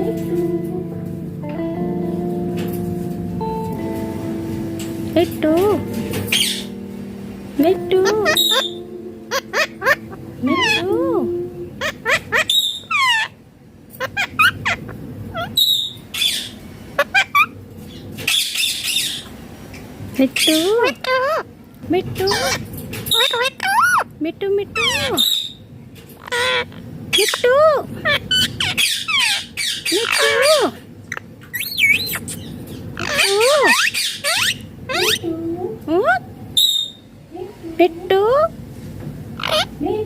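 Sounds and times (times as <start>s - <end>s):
parakeet squawking: 5.5s - 6.8s, 7.6s - 19.3s, 20.2s - 35.4s, 36.0s - 37.1s, 39.3s - 39.9s
parakeet chirping: 5.6s - 6.8s, 7.7s - 19.3s, 20.2s - 35.3s, 36.0s - 37.1s, 39.4s - 39.8s.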